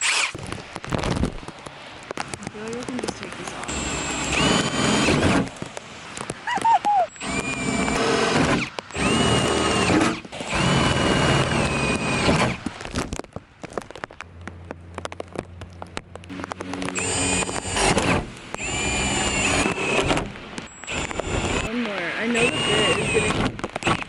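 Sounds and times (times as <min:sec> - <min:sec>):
power drill whining: 0:00.0 - 0:00.4, 0:03.7 - 0:05.4, 0:07.1 - 0:12.6, 0:17.0 - 0:24.0.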